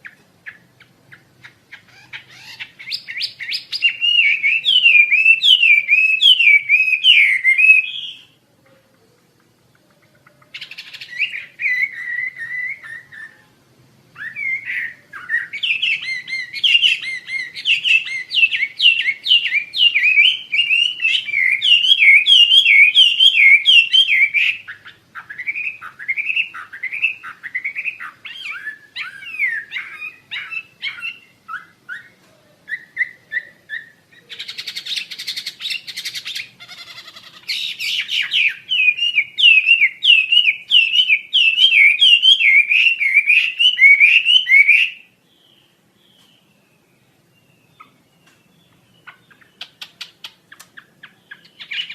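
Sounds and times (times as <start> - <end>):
bird singing whistled notes: 0.0 - 8.4, 10.5 - 13.5, 14.2 - 36.6, 37.3 - 51.9
harsh rasping bird call: 0.0 - 8.4, 14.2 - 45.1.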